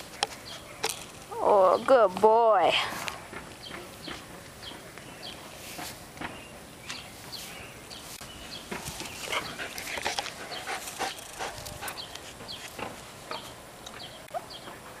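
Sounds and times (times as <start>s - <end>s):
dog panting: 9.2s - 12.6s.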